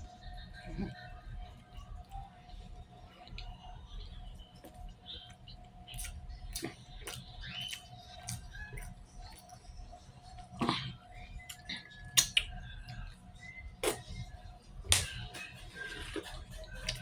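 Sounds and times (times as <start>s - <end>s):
chewing: 0.3s - 17.0s
mouth smacks and clicks: 10.6s - 12.6s.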